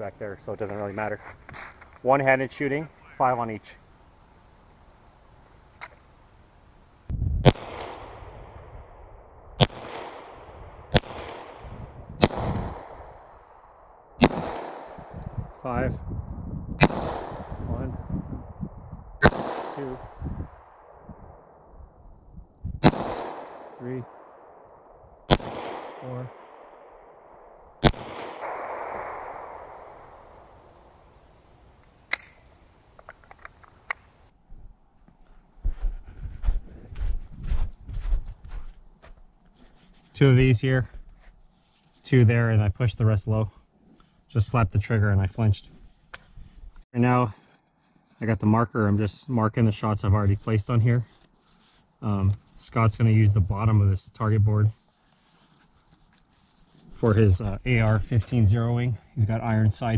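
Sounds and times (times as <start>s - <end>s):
sharp gunshot: 7.4s - 9.0s, 9.6s - 13.3s, 14.2s - 15.2s, 16.8s - 18.0s, 19.2s - 21.0s, 22.8s - 24.6s, 25.3s - 31.1s
pistol shots with echo: 7.4s - 15.2s, 16.8s - 17.7s, 19.2s - 21.0s, 22.8s - 24.7s, 25.3s - 31.1s.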